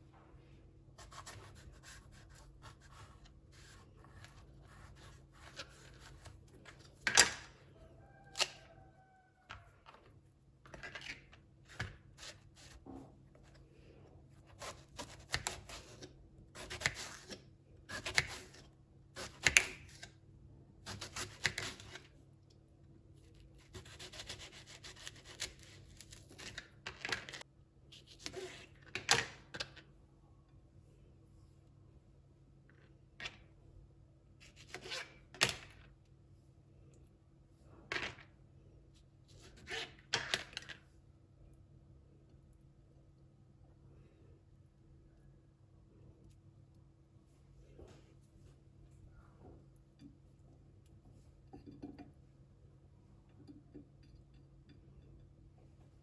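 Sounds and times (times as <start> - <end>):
faint steady hum: 29.6 - 39.6, 40.7 - 56.0.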